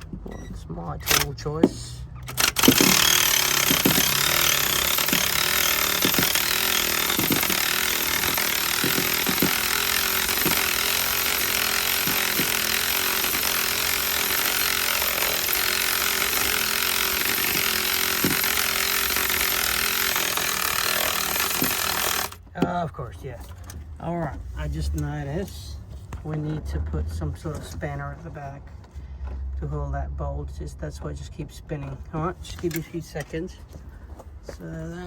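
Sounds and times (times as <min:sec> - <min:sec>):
electric ratchet running: 0:01.0 - 0:01.4, 0:02.1 - 0:22.4.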